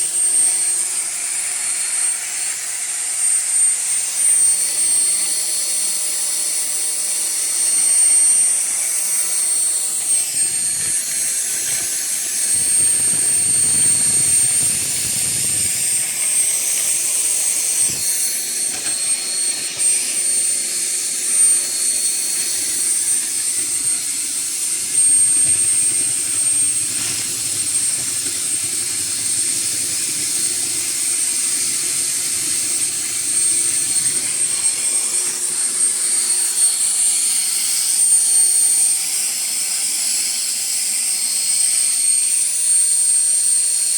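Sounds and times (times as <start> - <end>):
drilling rig motor running: 0.0 - 43.9
high even whine: 6.7 - 38.4.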